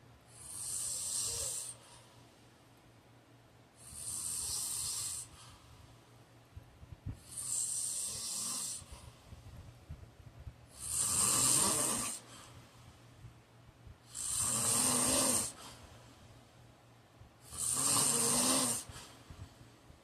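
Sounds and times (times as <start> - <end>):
man snoring: 0.4 - 1.8, 3.8 - 5.4, 7.2 - 8.9, 10.7 - 12.3, 14.0 - 15.7, 17.4 - 19.0.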